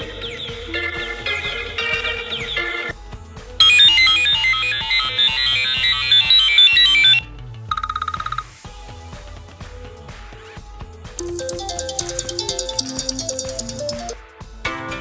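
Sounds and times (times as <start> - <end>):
rapid electronic trill: 0.0 - 8.6, 11.2 - 14.2
bright chiming ringtone melody: 3.6 - 8.5, 11.2 - 14.2
phone ringtone melody: 3.6 - 8.5, 11.2 - 14.2.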